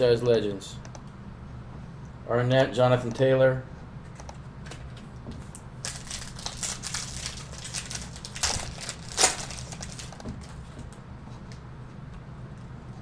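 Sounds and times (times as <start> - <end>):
plastic wrappers crinkling: 5.8 - 10.7.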